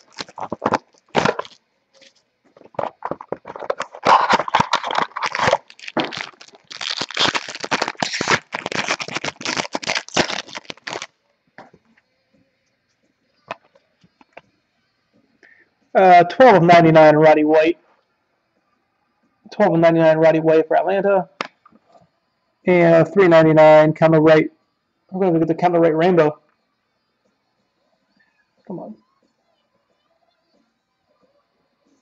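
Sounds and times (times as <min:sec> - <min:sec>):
packaging tearing and crinkling: 0:00.0 - 0:11.2.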